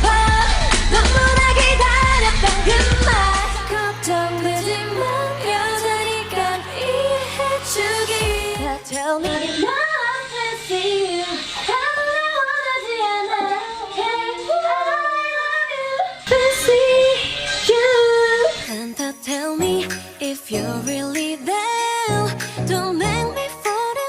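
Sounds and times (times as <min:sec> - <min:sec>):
backing music: 0:00.0 - 0:14.4, 0:17.6 - 0:24.0
woman singing pop song: 0:00.0 - 0:24.0.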